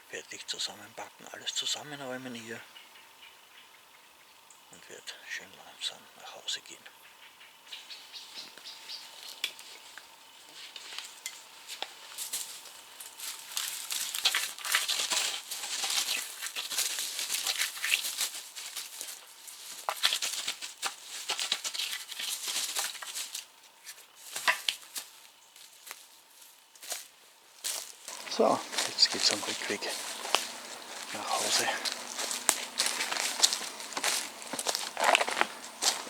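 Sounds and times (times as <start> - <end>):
bags and fabric rustling: 27.7 - 36.0.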